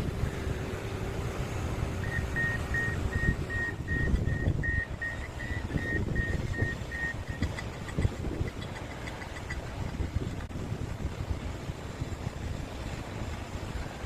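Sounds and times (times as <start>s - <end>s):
diesel engine rumbling: 0.0s - 14.0s
high-pitched warning beeps: 2.0s - 7.6s.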